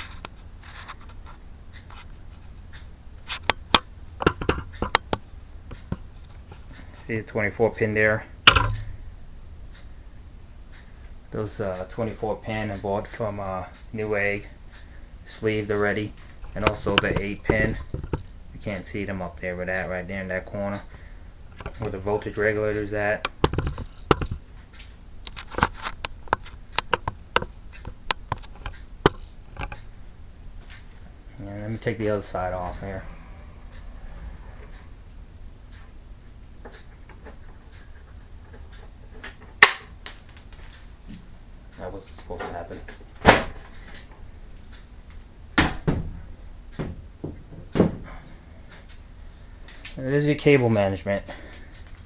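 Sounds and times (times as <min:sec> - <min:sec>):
knocks of metal side panel: 0:08.5 - 0:09.0, 0:45.6 - 0:46.2.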